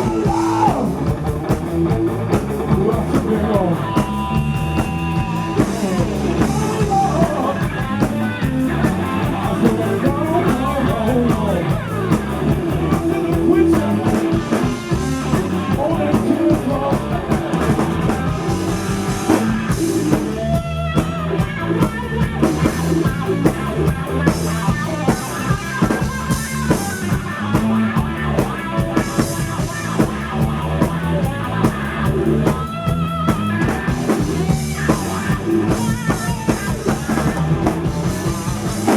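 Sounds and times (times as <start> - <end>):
person singing: 0.0 - 1.1, 5.2 - 7.8
drum kit beat: 0.0 - 38.9
electric guitar: 0.0 - 38.9.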